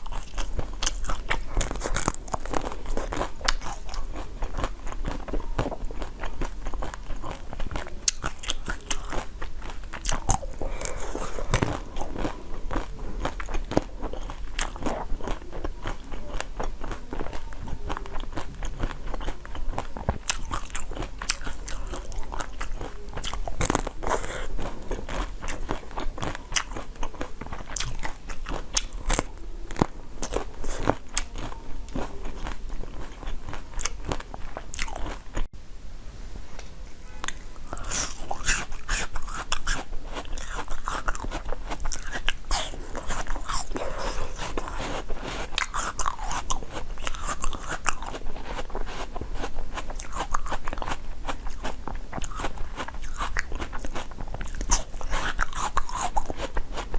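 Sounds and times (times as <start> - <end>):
person chewing crunchy food: 0.0 - 35.5, 36.9 - 56.9.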